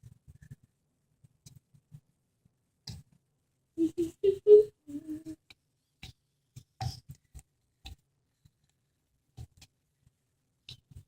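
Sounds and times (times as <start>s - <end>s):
soft taps and clicks of dough: 5.4s - 11.0s.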